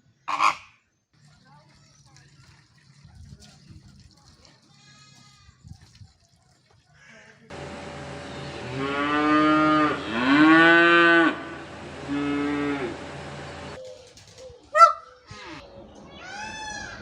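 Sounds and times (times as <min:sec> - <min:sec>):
low background hum: 0:07.5 - 0:14.4
cow mooing: 0:08.6 - 0:13.0.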